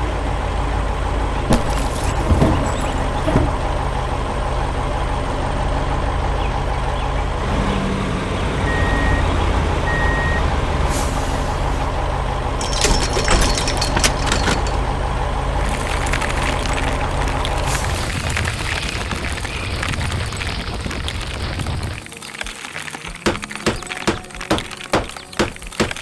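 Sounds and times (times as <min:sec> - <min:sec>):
heavy truck engine running: 0:00.0 - 0:19.1
reversing beeps: 0:08.6 - 0:10.5.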